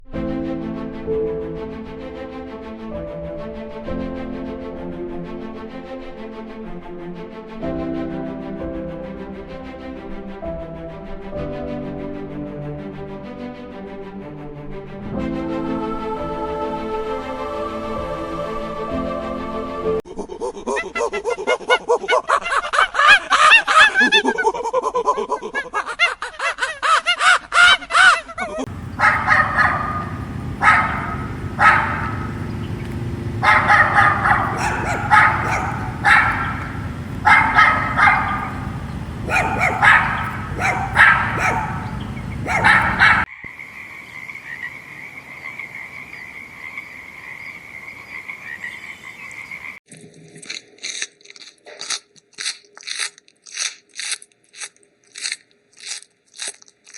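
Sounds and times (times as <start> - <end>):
rapid animal calls: 28.0 - 49.8
separate animal calls: 28.7 - 43.3
crackling clicks: 49.9 - 56.9.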